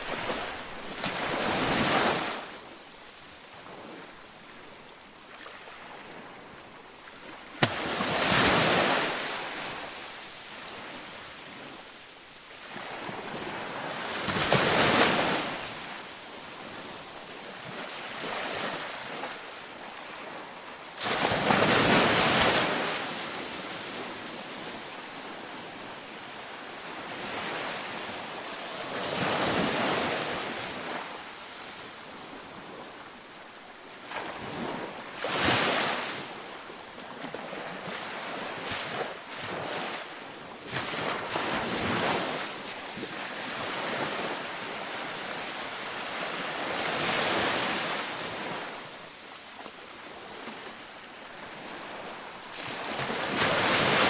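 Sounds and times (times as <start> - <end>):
steady surf hiss: 0.0 - 34.2
ocean waves breaking: 0.0 - 54.0.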